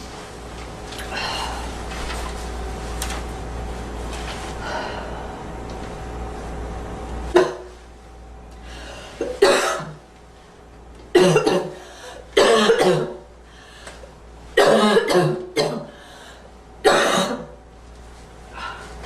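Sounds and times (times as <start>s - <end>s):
woman coughing: 7.4s - 7.7s, 9.2s - 10.0s, 11.2s - 13.3s, 14.6s - 16.0s, 16.8s - 17.6s.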